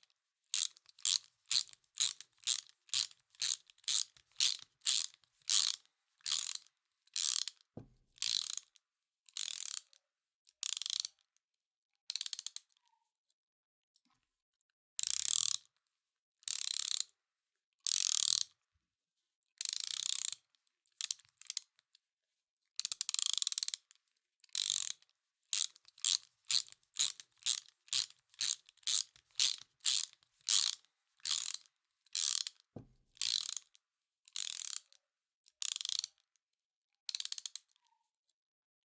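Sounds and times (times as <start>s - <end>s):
ratchet wrench clicking: 0.6s - 7.6s, 8.2s - 8.7s, 9.4s - 9.9s, 10.6s - 11.1s, 15.0s - 15.6s, 16.5s - 17.0s, 17.9s - 18.5s, 22.9s - 23.8s, 24.6s - 25.0s, 25.6s - 32.6s, 33.2s - 33.7s, 34.4s - 34.9s, 35.6s - 36.2s, 37.1s - 37.6s.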